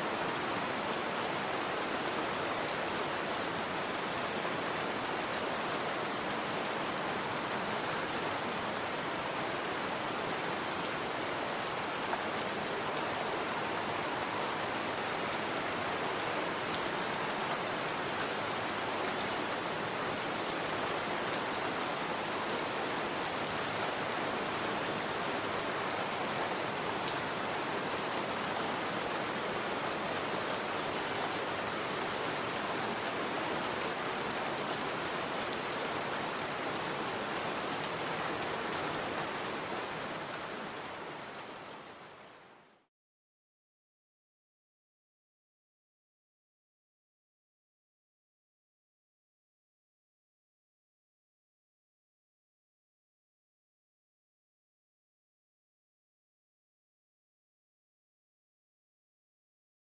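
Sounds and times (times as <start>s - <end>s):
heavy rain: 0.0s - 42.9s.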